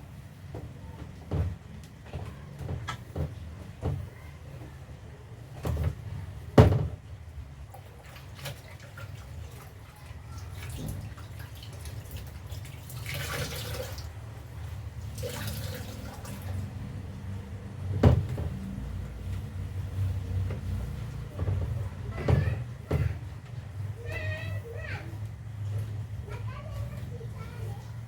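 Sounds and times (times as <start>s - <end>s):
knocks and clatters of items: 0.1s - 7.2s, 17.8s - 24.4s
water splashing: 15.0s - 16.7s.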